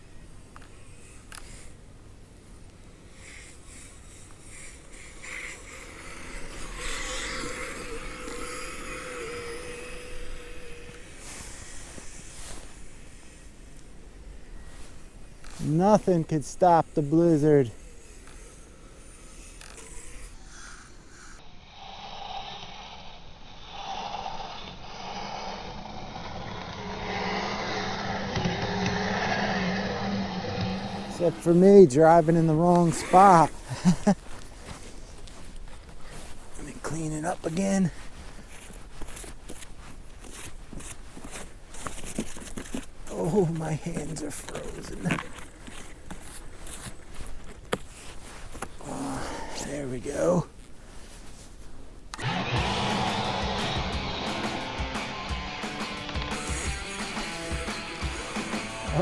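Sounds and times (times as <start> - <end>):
electric motor whine: 3.0 - 15.8, 16.9 - 21.3, 25.0 - 33.7, 52.2 - 59.0.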